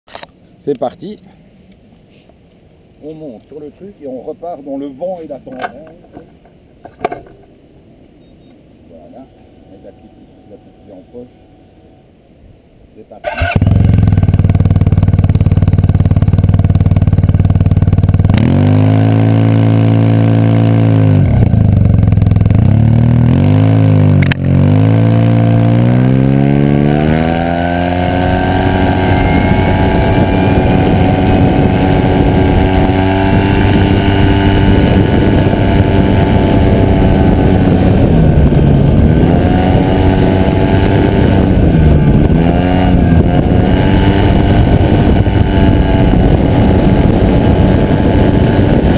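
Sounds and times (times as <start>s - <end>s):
scooter engine idling and revving: 13.3s - 48.9s.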